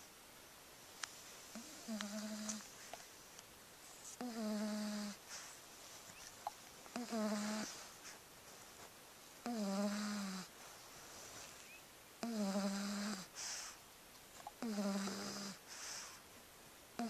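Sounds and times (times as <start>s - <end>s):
breathy hiss: 1.0s - 16.4s
dog snoring: 1.5s - 2.7s, 4.2s - 5.5s, 6.9s - 7.8s, 9.4s - 10.5s, 12.2s - 13.8s, 14.6s - 16.2s.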